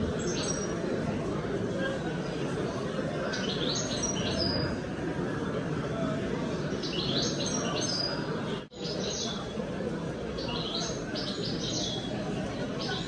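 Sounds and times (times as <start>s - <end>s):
murmur of crowd chatter: 0.0s - 13.0s
birds chirping: 10.4s - 13.0s.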